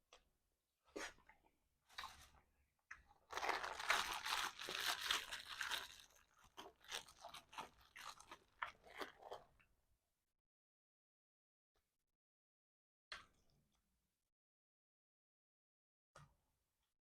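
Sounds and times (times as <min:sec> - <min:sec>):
person chewing crunchy food: 0:03.0 - 0:09.6.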